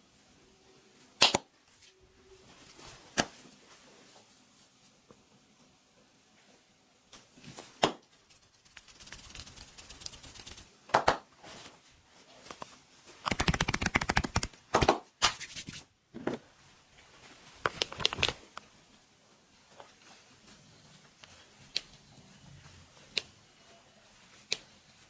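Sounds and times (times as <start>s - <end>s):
rapid tapping strokes: 8.2s - 10.7s, 13.3s - 14.5s
hands slapping and patting body: 13.2s - 15.8s.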